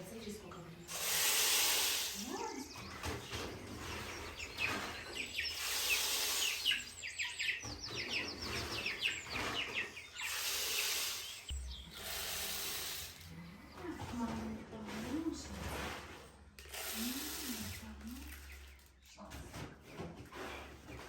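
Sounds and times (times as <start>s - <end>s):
poultry chirping: 0.8s - 13.8s
hissing noise: 0.9s - 2.3s.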